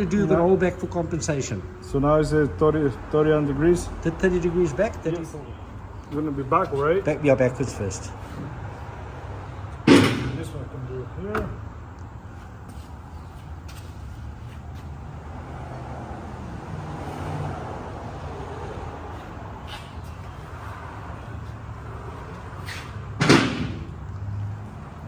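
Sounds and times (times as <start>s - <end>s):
loud clunk: 9.9s - 10.5s, 23.2s - 24.0s.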